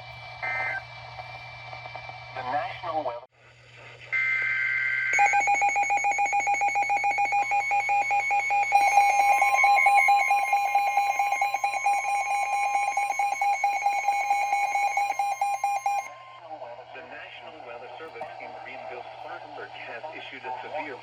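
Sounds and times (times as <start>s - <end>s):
steady alarm tone: 4.2s - 16.4s
warbling data burst: 5.2s - 16.1s
pulsing attention alarm tone: 5.2s - 16.2s.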